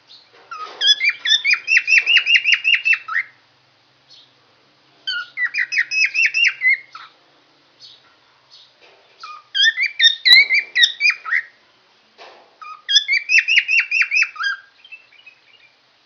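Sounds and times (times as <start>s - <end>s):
lovebird chirping: 0.0s - 3.4s, 5.0s - 7.2s, 7.8s - 11.6s, 12.6s - 16.0s.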